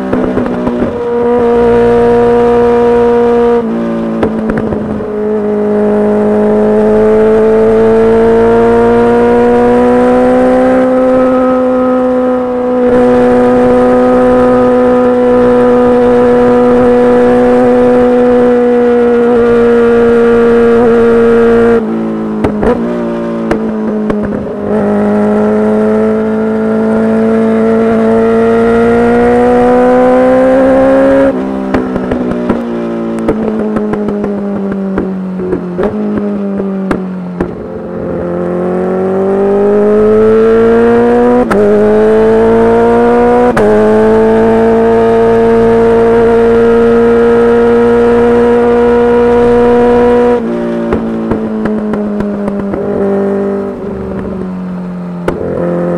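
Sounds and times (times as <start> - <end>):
exhaust crackling and popping: 0.0 - 5.5, 21.8 - 25.4, 31.2 - 38.6, 47.3 - 55.9
motorcycle engine revving hard: 0.0 - 54.5, 55.2 - 55.9.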